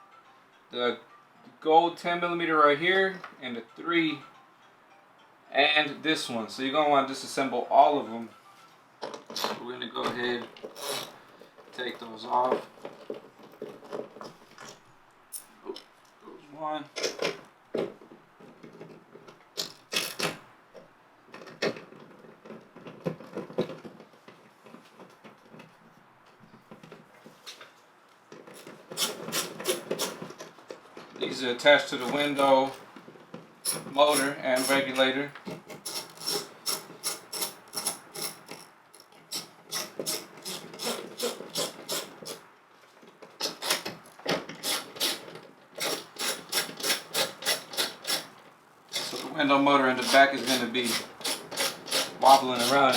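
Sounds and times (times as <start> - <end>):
hand tools clicking on bolts: 9.0 - 16.0, 18.6 - 20.4, 28.4 - 31.3, 33.6 - 42.5, 43.1 - 52.9
ratchet wrench clicking: 10.8 - 11.2, 35.8 - 42.4, 44.6 - 48.3, 48.9 - 49.3, 50.0 - 52.9.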